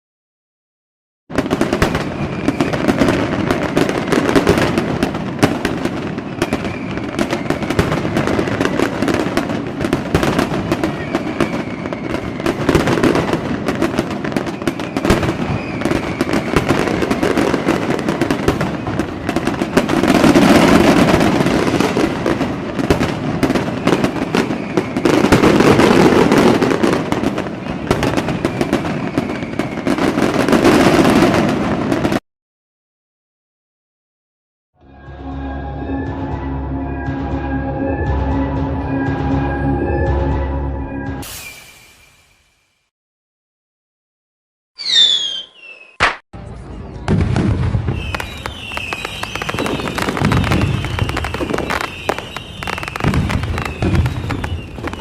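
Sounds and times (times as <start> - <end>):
fireworks crackling and popping: 1.3 - 32.2, 44.8 - 46.2, 47.0 - 55.0.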